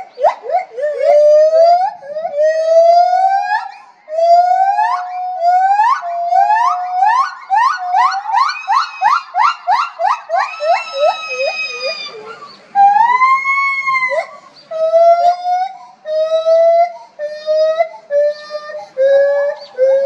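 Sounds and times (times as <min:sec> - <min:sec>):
primates calling: 0:00.0 - 0:20.0.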